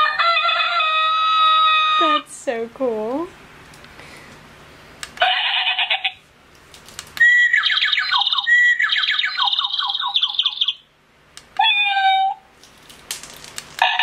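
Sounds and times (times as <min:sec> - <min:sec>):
chirping warbling birdsong melody: 0:07.2 - 0:10.9
squawk-like bird call: 0:07.2 - 0:10.9.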